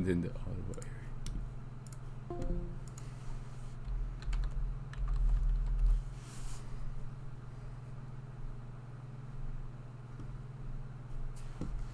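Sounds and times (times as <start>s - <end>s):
computer keyboard keystrokes: 4.2s - 5.9s.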